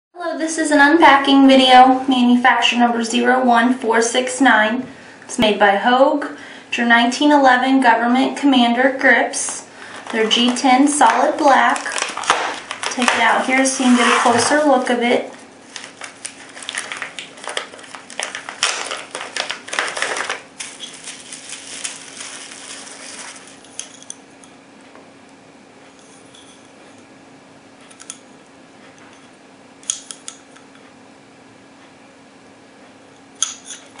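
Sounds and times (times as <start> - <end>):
plastic packaging rustling: 9.4 - 24.1.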